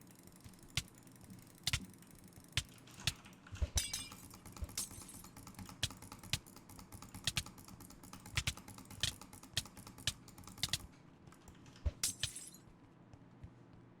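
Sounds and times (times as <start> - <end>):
computer mouse buttons clicking: 1.7 - 1.9, 7.3 - 7.5, 8.3 - 10.8.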